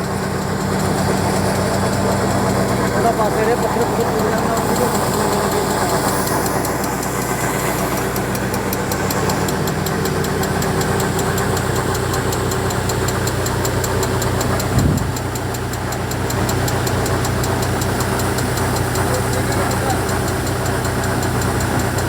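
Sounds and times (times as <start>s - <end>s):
fast ticking machinery: 0.0s - 22.0s
tractor engine running: 0.0s - 22.0s
short thump: 14.7s - 15.3s.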